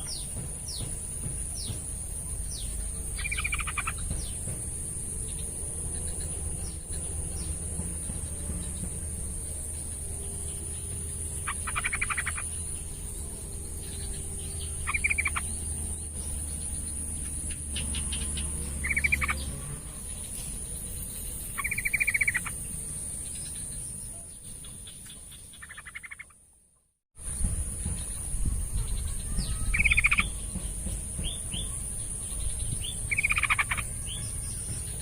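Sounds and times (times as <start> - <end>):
bird chattering calls: 0.0 - 4.6, 11.0 - 16.4, 17.2 - 20.3, 21.4 - 22.6, 24.7 - 26.4, 27.8 - 35.0.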